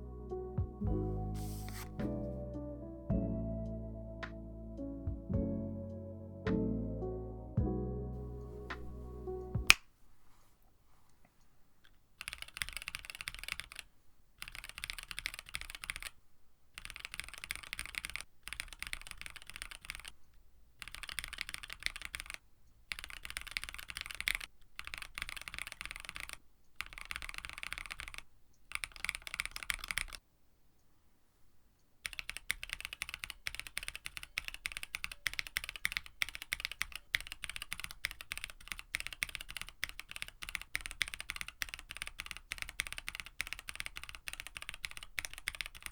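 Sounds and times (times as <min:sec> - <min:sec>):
fast typing on mechanical keyboard: 0:12.2 - 0:20.2, 0:20.8 - 0:30.2, 0:32.0 - 0:45.9.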